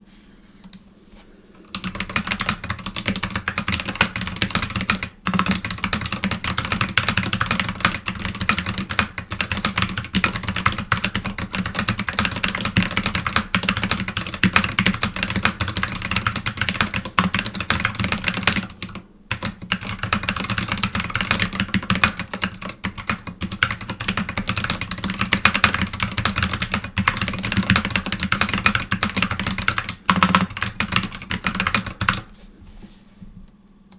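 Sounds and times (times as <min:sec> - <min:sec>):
fast typing on mechanical keyboard: 0:01.7 - 0:32.3.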